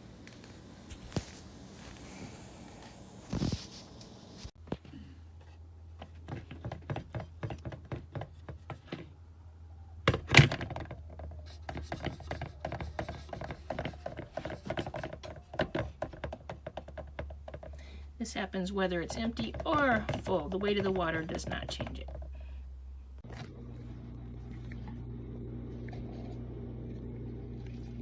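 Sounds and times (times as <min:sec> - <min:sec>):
low steady hum: 0:00.0 - 0:28.0
kettle handling clicks and knocks: 0:10.1 - 0:17.9, 0:19.0 - 0:22.4.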